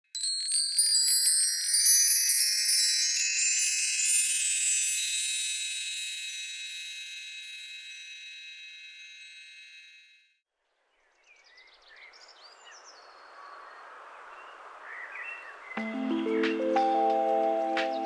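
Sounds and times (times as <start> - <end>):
high-pitched metal chimes: 0.1 - 10.4.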